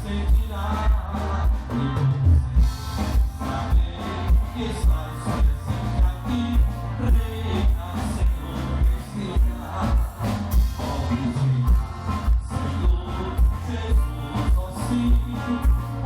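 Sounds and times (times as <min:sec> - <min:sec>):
live band music: 0:00.0 - 0:16.0.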